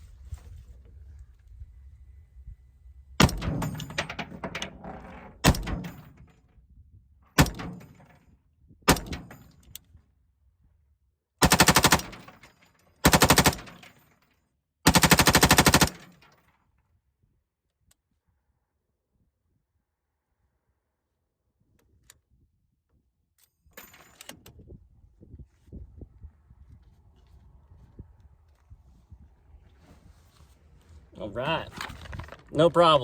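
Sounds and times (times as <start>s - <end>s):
automatic gunfire bursts: 11.4s - 12.2s, 13.0s - 13.8s, 14.9s - 16.1s.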